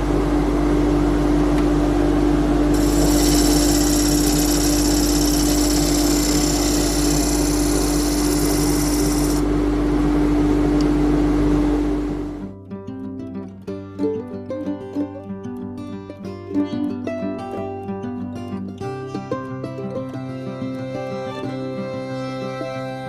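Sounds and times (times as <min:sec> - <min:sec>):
turning tool hissing on wood: 0:02.7 - 0:09.4
lathe humming: 0:02.7 - 0:09.6.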